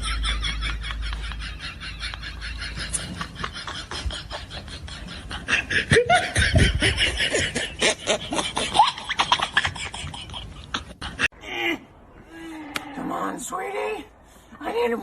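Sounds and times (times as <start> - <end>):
laughter: 0.0 - 11.3.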